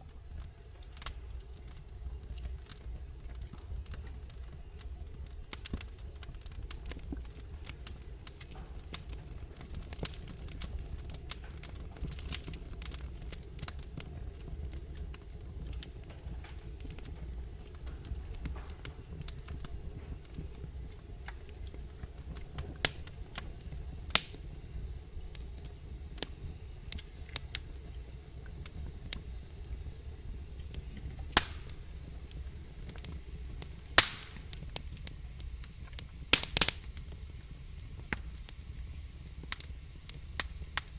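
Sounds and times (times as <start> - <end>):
logs crackling in fireplace: 0.0 - 40.9
sharp fire pops: 2.6 - 40.9
low rumble: 13.7 - 36.2.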